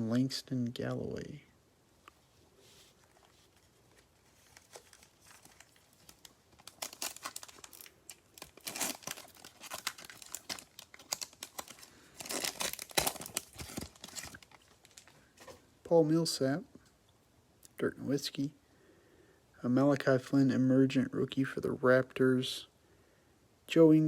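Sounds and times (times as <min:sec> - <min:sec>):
card pack wrapper tearing and crinkling: 0:03.1 - 0:15.5.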